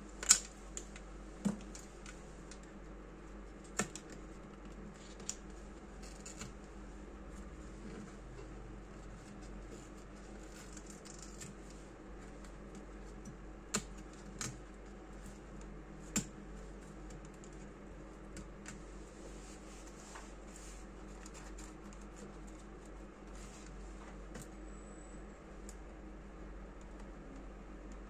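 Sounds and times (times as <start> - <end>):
steady low hum: 0.0 - 28.0
hands clicking computer parts: 3.6 - 5.4, 15.6 - 16.4.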